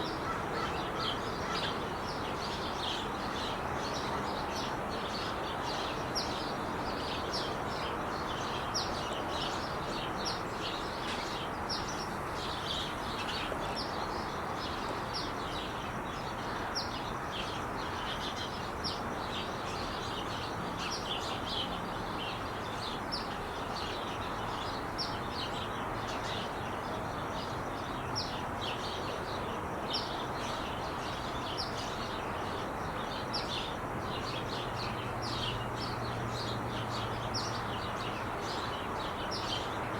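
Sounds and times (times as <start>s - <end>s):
small birds chirping: 0.0s - 39.9s
freeway traffic rushing: 32.2s - 39.9s.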